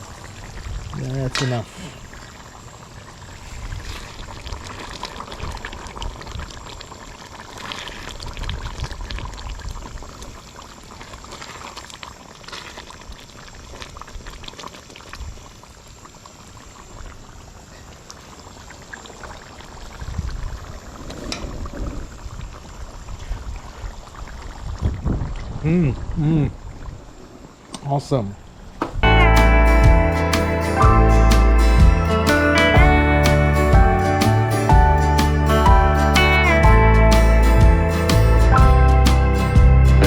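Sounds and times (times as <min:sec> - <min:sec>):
curry bubbling in a pot: 0:00.0 - 0:27.2.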